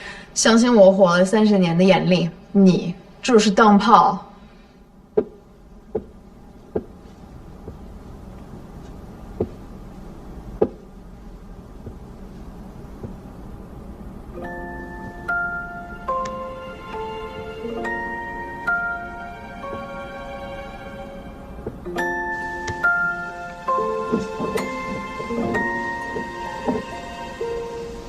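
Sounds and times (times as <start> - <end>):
low room hum: 0.0 - 28.0
pool balls clacking: 5.2 - 9.8, 10.5 - 10.9, 21.6 - 27.5
slow bell-like background music: 14.4 - 28.0.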